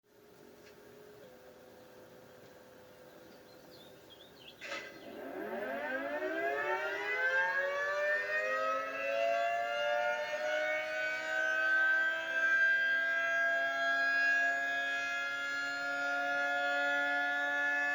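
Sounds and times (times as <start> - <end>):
warning siren winding up: 4.6 - 17.9.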